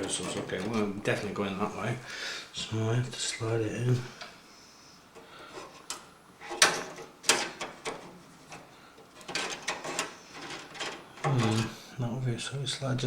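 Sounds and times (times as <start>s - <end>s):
thin metal scraping and clicking: 0.0s - 1.3s, 5.2s - 11.7s.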